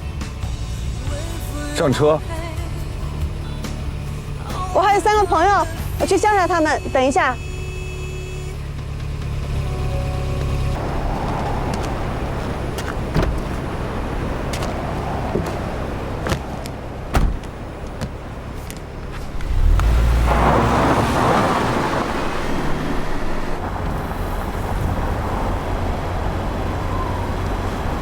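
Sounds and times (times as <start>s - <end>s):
car engine and road noise: 0.0s - 28.0s
sharp knocks: 17.1s - 17.6s.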